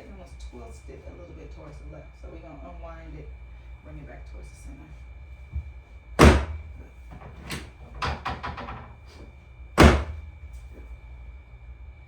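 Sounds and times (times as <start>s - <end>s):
knock: 6.2s - 6.6s, 9.8s - 10.2s
loud thuds on treatment table: 6.2s - 8.9s, 9.8s - 10.2s.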